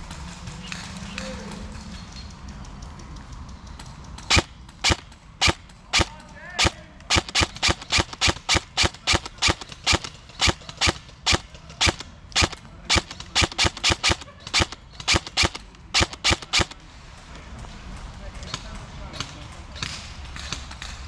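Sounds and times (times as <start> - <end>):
airsoft guns firing: 4.2 - 16.9.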